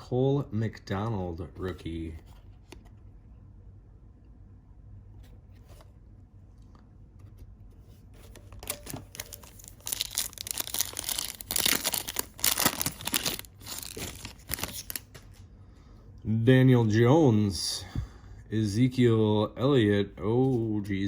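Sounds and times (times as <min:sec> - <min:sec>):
foil wrapper tearing and crinkling: 0:08.6 - 0:15.1.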